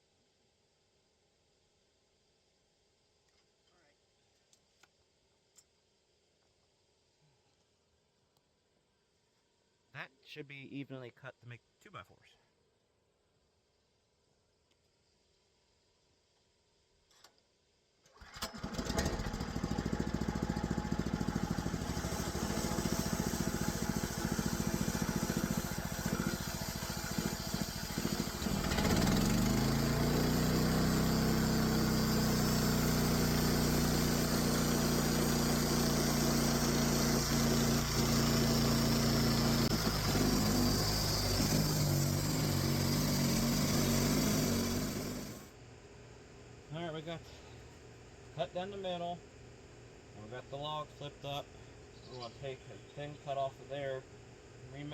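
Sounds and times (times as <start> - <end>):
sawmill gasoline engine running: 18.2 - 45.5
blade sawing through log: 21.4 - 30.4, 32.4 - 45.5.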